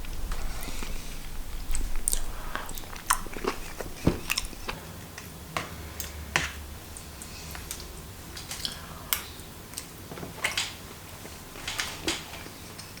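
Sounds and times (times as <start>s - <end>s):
chewing and mouth smacks: 1.6s - 4.8s.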